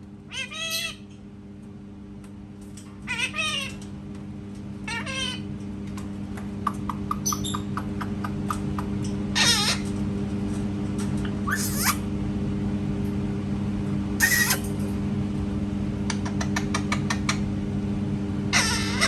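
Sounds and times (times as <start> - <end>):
steady low hum: 0.0 - 19.0
parrot harsh calls: 0.3 - 1.0, 3.1 - 3.8, 4.9 - 5.4, 9.4 - 9.9, 11.4 - 12.0, 14.2 - 14.8, 18.5 - 19.0.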